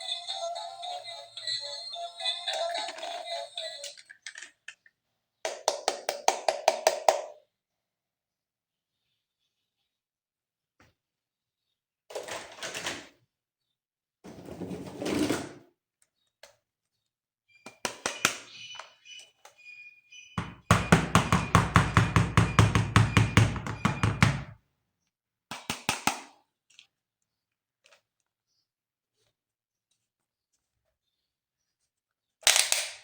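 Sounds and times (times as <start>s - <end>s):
plastic toy rustling: 1.8s - 4.9s
plastic toy clicking: 2.4s - 5.9s, 32.4s - 33.0s.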